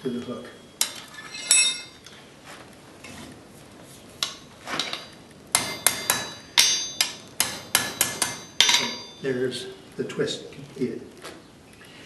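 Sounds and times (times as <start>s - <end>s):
hammer blows on anvil: 5.6s - 9.3s.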